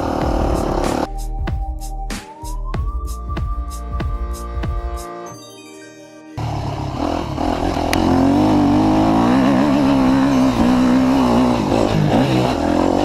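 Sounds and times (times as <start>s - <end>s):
dirt bike engine revving: 0.0s - 1.1s, 6.4s - 13.0s.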